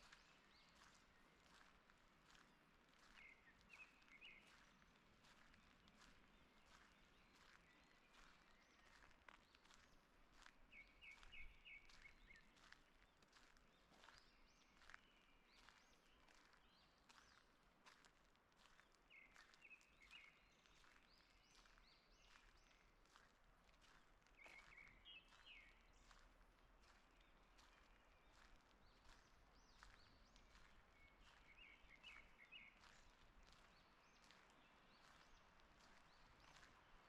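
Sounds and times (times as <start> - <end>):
footsteps on forest path: 0.0 - 37.0
songbird singing: 2.4 - 9.8, 10.4 - 13.2, 19.1 - 23.2, 23.9 - 37.0.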